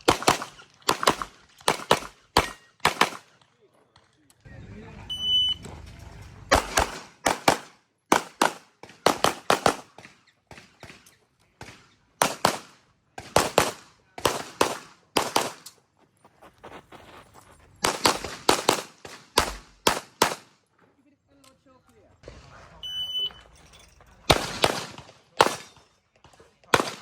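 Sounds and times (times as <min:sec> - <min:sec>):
pistol shots: 0:00.0 - 0:03.3, 0:06.5 - 0:11.0, 0:11.6 - 0:15.7, 0:17.8 - 0:20.6, 0:24.3 - 0:27.0.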